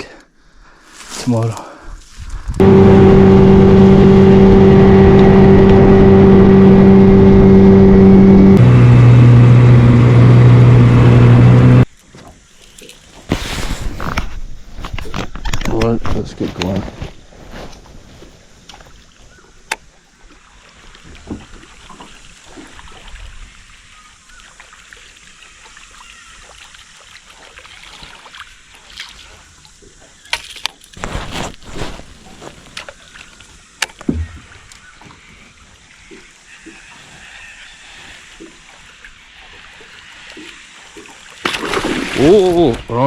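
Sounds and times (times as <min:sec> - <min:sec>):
water lapping around boat: 0:18.2 - 0:31.0, 0:32.1 - 0:43.0.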